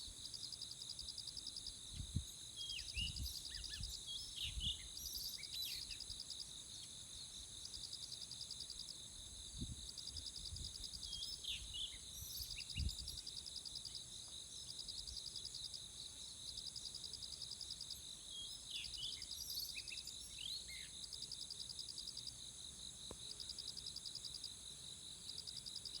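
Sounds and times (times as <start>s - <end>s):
insects trilling: 9.9s - 26.0s.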